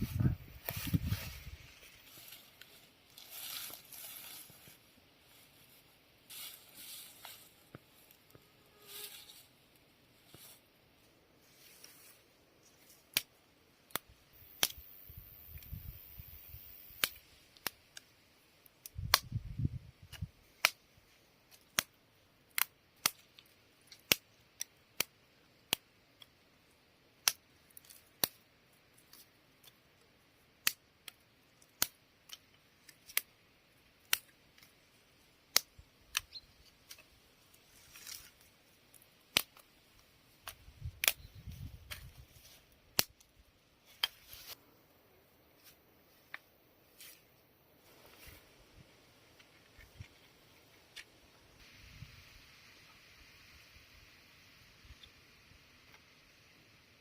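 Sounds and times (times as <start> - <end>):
campfire crackling and popping: 13.0 - 29.8, 30.6 - 44.2.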